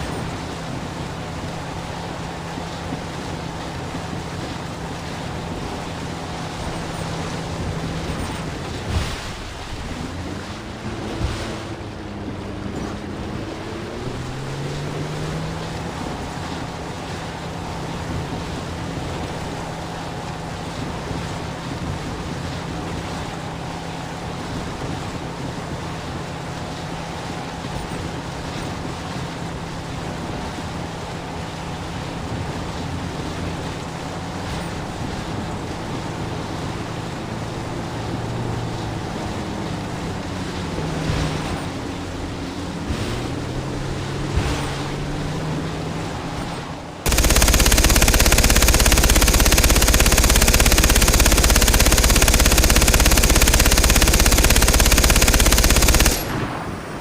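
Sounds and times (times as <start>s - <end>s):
motorboat engine running: 0.0s - 57.0s.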